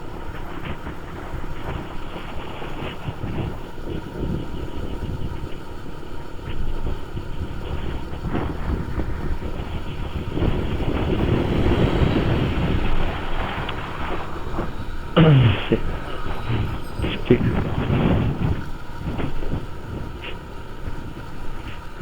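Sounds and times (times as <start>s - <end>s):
wind buffeting microphone: 0.0s - 22.0s
motorcycle engine: 6.7s - 21.6s.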